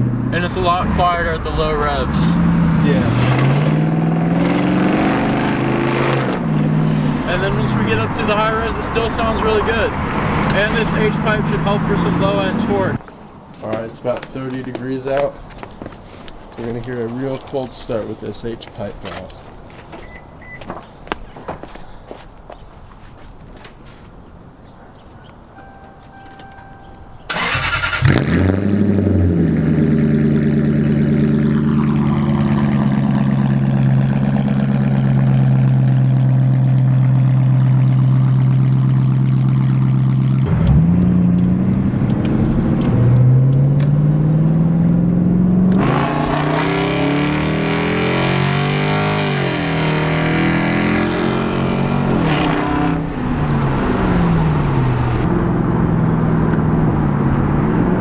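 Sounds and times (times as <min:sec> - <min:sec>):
car engine starting and revving: 0:00.0 - 0:13.0, 0:27.3 - 0:58.0.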